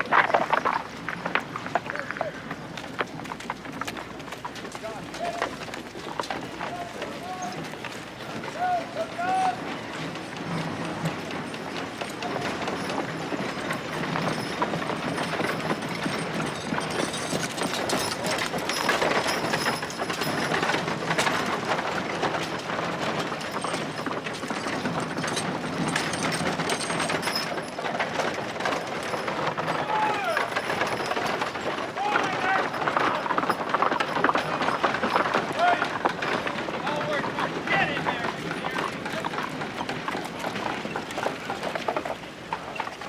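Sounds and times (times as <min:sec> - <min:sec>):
carriages rolling and clattering: 0:00.0 - 0:43.0
hooves clip-clopping: 0:00.0 - 0:43.0.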